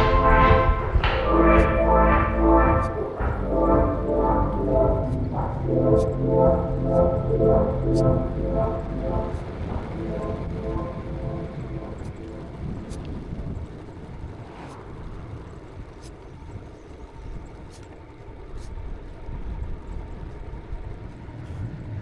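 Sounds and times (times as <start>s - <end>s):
wind rumbling on microphone: 0.0s - 22.0s
bicycle tyre road noise: 9.2s - 22.0s.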